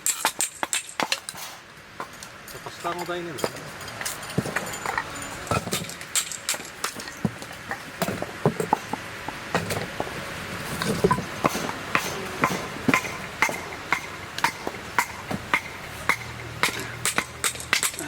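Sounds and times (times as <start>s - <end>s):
hard objects knocking and clacking: 0.0s - 1.4s, 2.0s - 18.0s.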